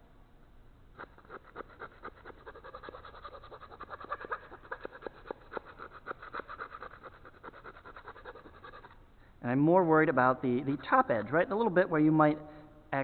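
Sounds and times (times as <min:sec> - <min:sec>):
file rasping in wood: 0:01.0 - 0:09.0.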